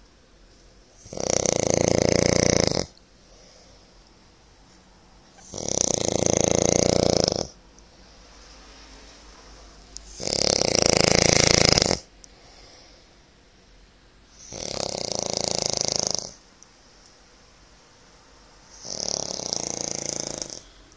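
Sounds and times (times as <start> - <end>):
man snoring: 1.0 - 3.0, 5.4 - 7.6, 10.1 - 12.1, 14.4 - 16.4, 18.7 - 20.7
faint breathing: 3.1 - 4.8, 12.2 - 15.2.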